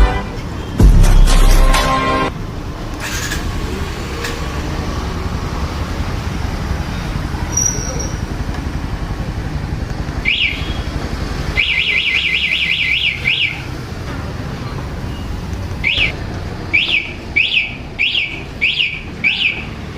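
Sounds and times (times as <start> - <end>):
motorcycle alarm chirping: 7.5 - 8.2, 10.2 - 13.8, 15.0 - 19.9.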